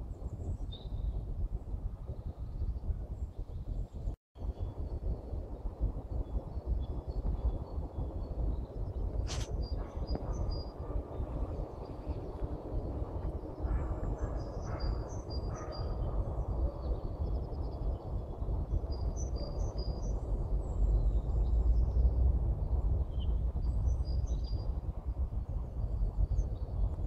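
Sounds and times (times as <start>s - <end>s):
steady low rumble: 0.0s - 27.0s
songbirds chirping and singing: 13.1s - 21.8s.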